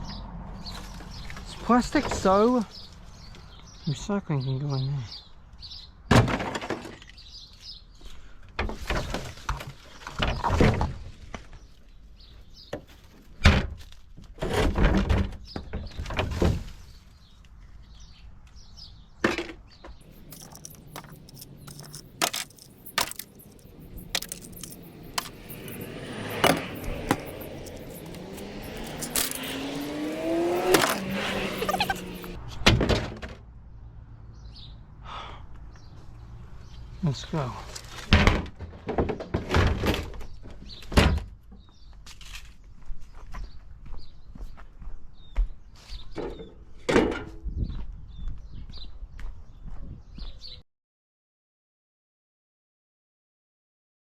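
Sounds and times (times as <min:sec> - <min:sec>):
vehicle engine rising in pitch: 0:23.3 - 0:32.4.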